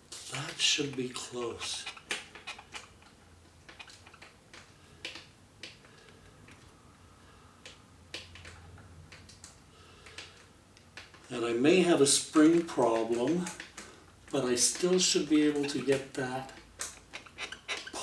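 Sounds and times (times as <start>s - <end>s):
small metal parts clicking: 0.5s - 5.8s, 12.3s - 18.0s.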